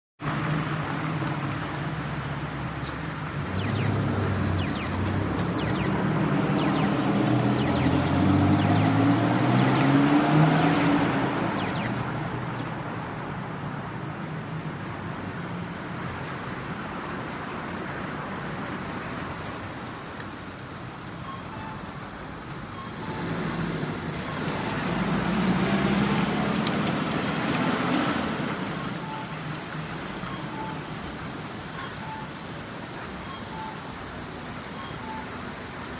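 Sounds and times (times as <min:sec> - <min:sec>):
steady traffic hum: 0:00.2 - 0:35.9
vehicle passing: 0:00.3 - 0:17.2, 0:22.9 - 0:30.2
crossing signal beeps: 0:04.6 - 0:09.0, 0:21.2 - 0:22.0, 0:22.7 - 0:23.4, 0:24.1 - 0:24.9, 0:28.8 - 0:32.4, 0:33.2 - 0:34.0, 0:34.7 - 0:35.4.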